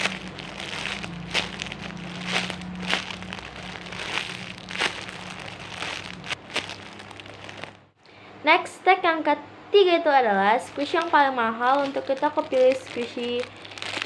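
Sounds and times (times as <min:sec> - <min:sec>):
foam toy rustling and crinkling: 0:00.0 - 0:07.8, 0:10.7 - 0:14.0.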